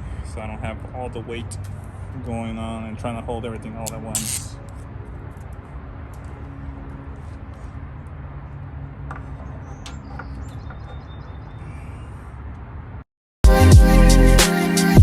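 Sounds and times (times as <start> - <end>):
small parts clicking: 3.9 - 4.6
birds chirping: 9.2 - 12.5.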